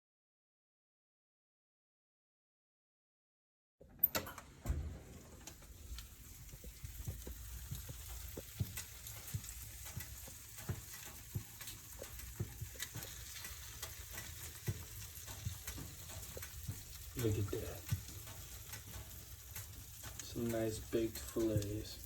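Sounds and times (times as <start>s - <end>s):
oil popping and crackling: 5.0s - 22.0s
fish sizzling in hot oil: 5.6s - 22.0s.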